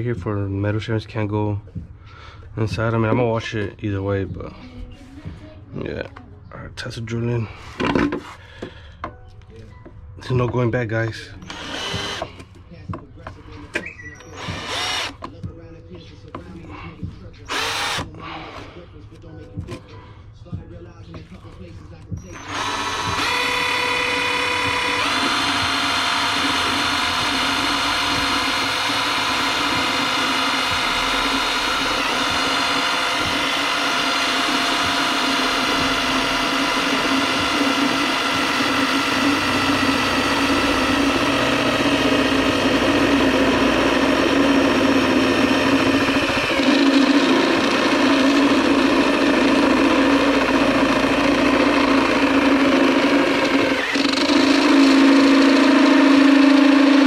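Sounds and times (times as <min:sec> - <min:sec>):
electric drill whining under load: 0:11.4 - 0:12.4, 0:14.0 - 0:15.2, 0:17.5 - 0:18.1, 0:22.3 - 0:57.0.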